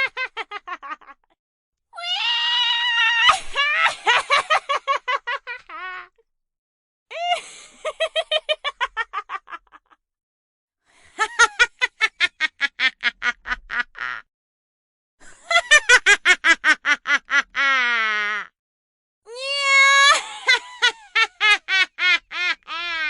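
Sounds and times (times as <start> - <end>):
witch's cackling laugh: 0.0 - 1.4, 3.3 - 6.1, 7.2 - 10.0, 11.2 - 14.3, 15.2 - 18.5, 20.0 - 23.0.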